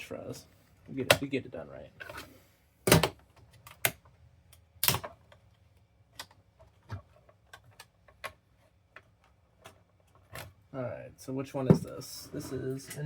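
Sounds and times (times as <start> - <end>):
tools and plastic parts clicking: 6.1 - 10.5.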